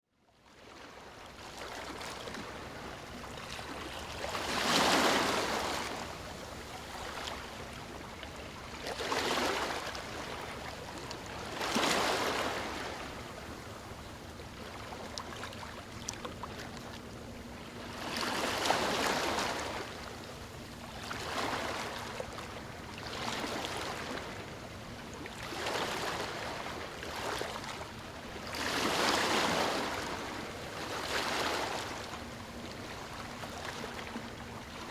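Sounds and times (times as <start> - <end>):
small waves washing on sand: 1.5 - 8.0, 28.4 - 32.1.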